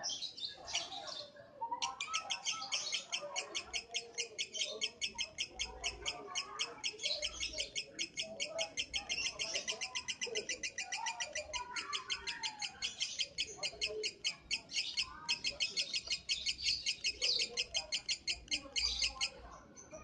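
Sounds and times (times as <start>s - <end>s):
lovebird chattering high chirps: 1.8s - 19.5s.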